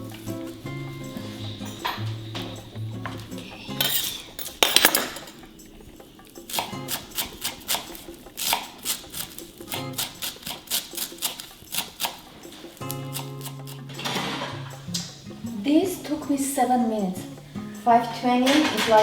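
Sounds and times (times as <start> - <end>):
background music: 0.0 - 19.0
knife chopping on cutting board: 6.5 - 13.9.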